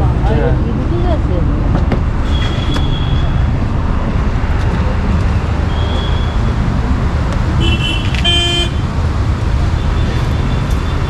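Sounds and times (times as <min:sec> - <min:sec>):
car horn: 0:07.6 - 0:09.0.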